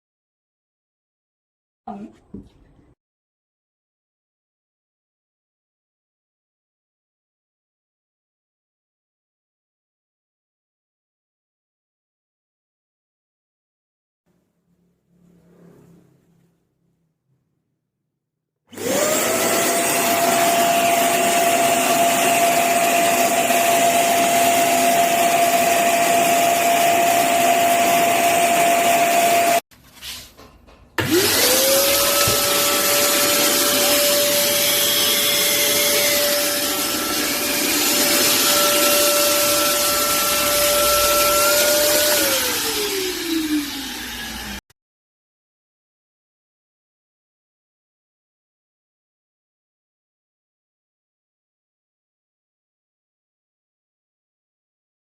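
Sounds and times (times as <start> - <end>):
vacuum cleaner motor whining: 18.7 - 29.6, 31.0 - 44.6.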